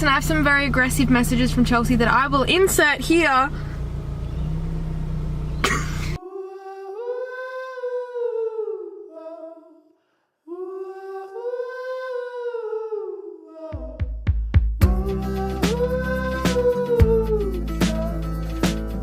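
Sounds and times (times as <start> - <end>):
car interior rumble: 0.0 - 6.2.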